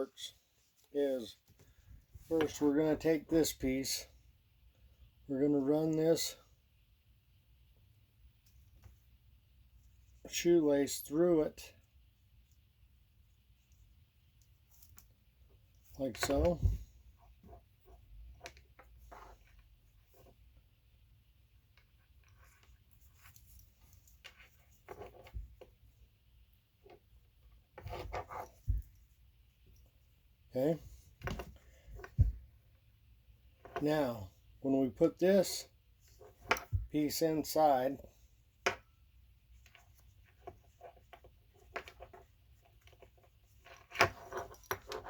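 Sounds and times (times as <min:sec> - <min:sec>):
leather rustling and scraping: 0:27.8 - 0:29.0.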